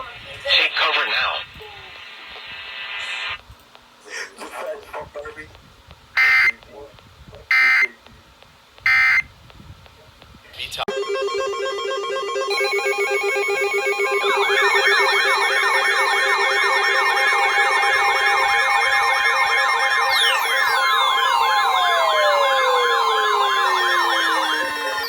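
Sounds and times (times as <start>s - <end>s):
pulsing electronic beeping: 10.9s - 25.0s
wailing siren tone: 10.9s - 25.0s.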